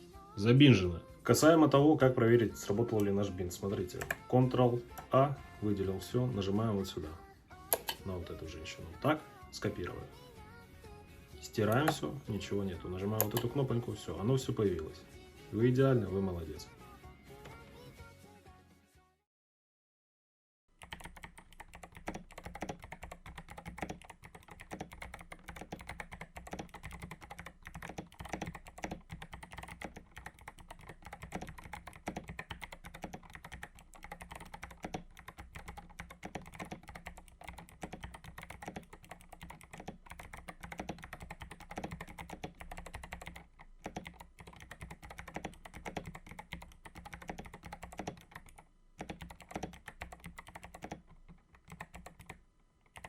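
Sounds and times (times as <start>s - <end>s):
fast typing on mechanical keyboard: 13.2s - 13.7s, 20.8s - 53.0s.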